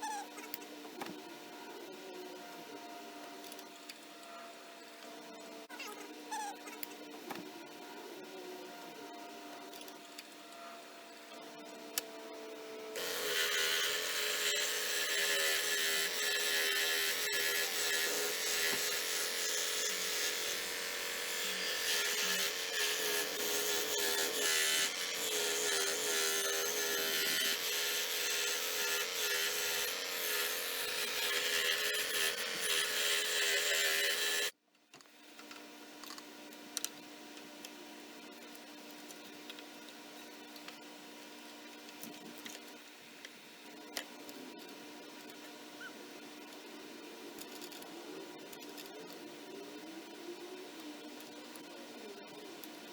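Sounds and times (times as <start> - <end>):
scroll saw cutting wood: 13.0 - 34.6.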